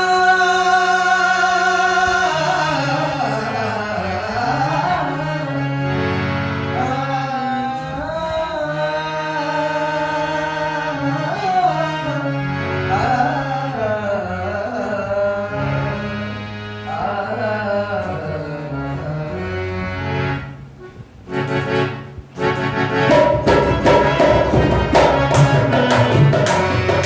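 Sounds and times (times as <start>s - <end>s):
man singing: 0.0s - 6.0s, 6.7s - 19.9s
held instrumental chords: 18.0s - 27.0s
dholak drum rhythm: 21.5s - 27.0s.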